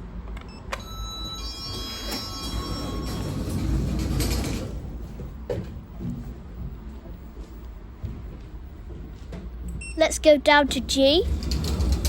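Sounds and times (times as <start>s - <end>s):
ringing tone: 0.7s - 3.7s
lift doors sliding: 0.8s - 5.5s, 10.8s - 12.0s.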